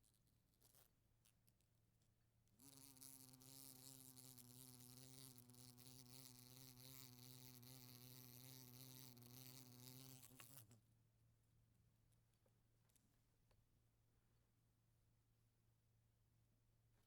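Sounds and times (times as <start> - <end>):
wasp buzzing against window: 2.6 - 10.8.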